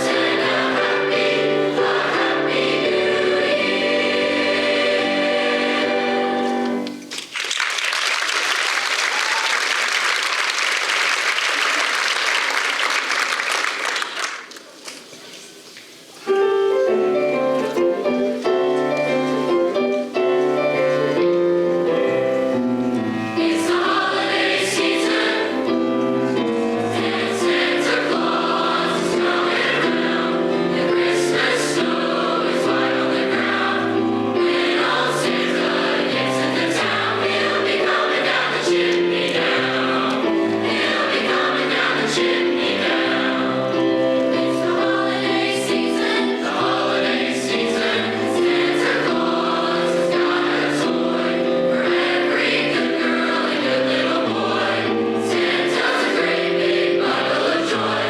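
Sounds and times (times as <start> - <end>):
choir singing: 0.0 - 6.9, 16.9 - 58.0
audience applauding: 6.8 - 15.2.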